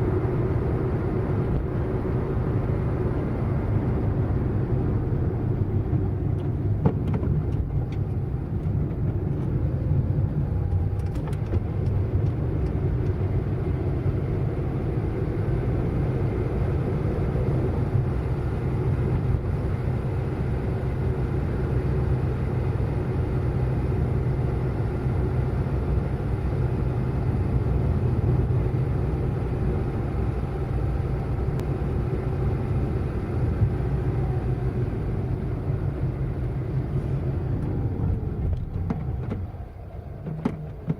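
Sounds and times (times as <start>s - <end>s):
car engine and road noise: 0.0s - 40.9s.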